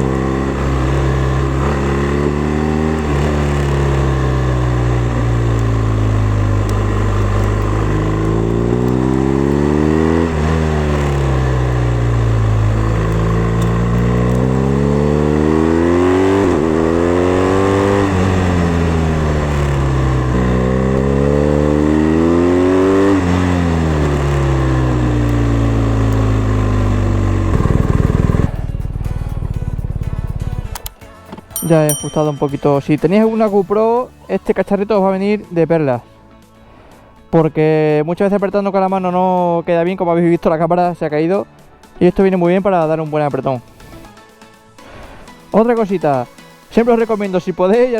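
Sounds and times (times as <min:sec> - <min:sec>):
motorcycle engine revving: 0:00.0 - 0:30.8.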